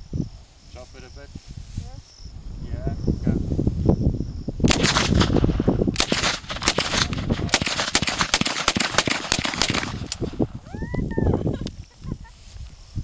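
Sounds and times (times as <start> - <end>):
semi-automatic gunshots: 4.7 - 10.5.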